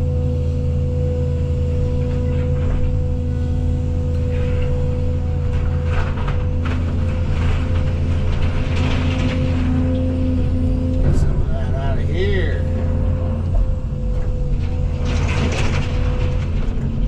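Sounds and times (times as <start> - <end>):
excavator diesel engine: 0.0 - 17.0
hydraulic whine: 0.0 - 17.0
timbers cracking and crunching: 4.6 - 17.0.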